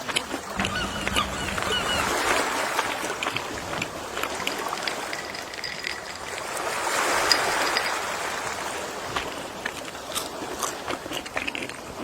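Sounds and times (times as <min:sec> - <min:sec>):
sea waves washing on shore: 0:00.0 - 0:12.0
crackle of water: 0:02.8 - 0:12.0.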